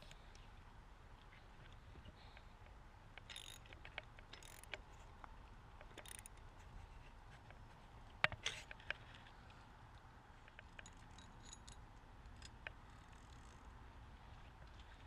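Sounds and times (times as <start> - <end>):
metallic clicks and rattles: 3.2 - 5.0, 5.8 - 6.5, 10.5 - 13.6.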